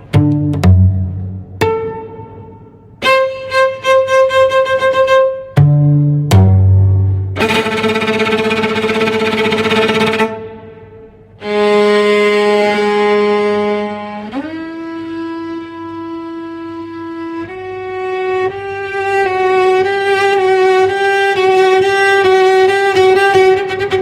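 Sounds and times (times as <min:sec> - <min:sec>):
eerie violin horror music: 0:07.4 - 0:15.0.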